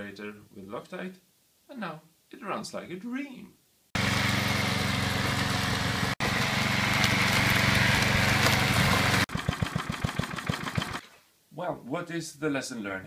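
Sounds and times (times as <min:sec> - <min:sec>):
lawn mower engine running: 0:04.0 - 0:11.0.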